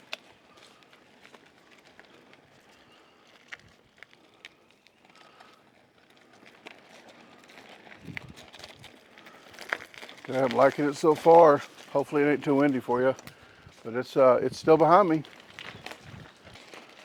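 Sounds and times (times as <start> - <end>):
wind noise: 8.0 - 8.5, 14.4 - 15.0, 15.6 - 16.6.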